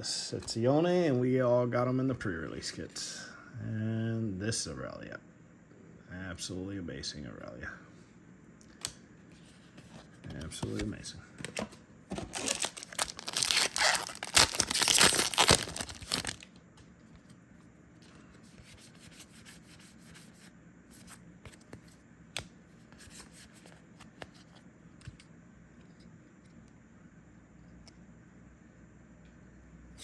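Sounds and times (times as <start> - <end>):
cards rustling and tapping: 8.7 - 16.4
foil wrapper tearing and crinkling: 12.3 - 16.5.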